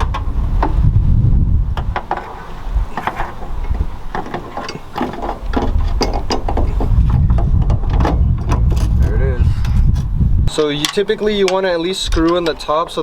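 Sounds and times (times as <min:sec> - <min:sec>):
metallic tool clicks and clanks: 0:10.6 - 0:12.8.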